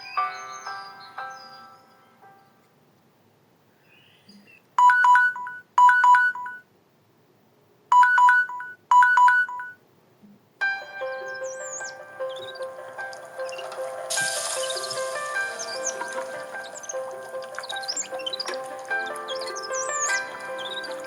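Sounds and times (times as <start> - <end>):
bright electronic phone tone: 4.8 - 6.6, 7.9 - 9.8.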